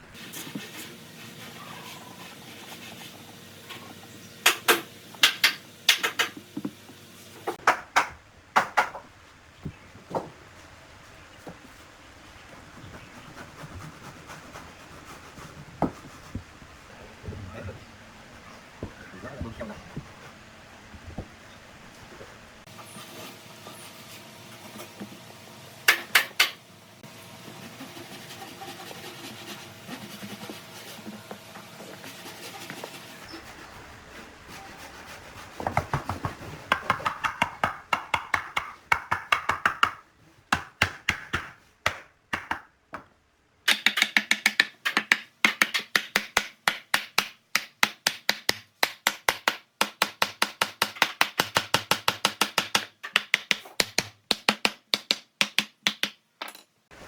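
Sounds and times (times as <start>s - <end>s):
hand tool striking wood: 43.7s - 56.2s.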